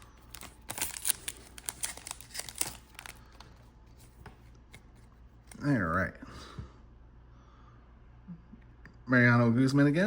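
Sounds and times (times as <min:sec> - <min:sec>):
foil wrapper crinkling and tearing: 0:00.0 - 0:03.6.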